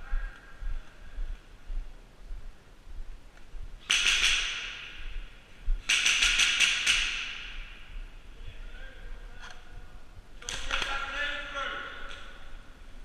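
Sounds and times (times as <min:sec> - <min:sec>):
airsoft guns firing bursts: 0:03.8 - 0:05.0, 0:05.8 - 0:07.7.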